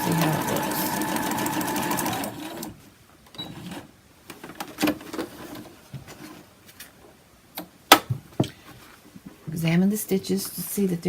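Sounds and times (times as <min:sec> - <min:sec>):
sewing machine stitching: 0:00.0 - 0:02.8.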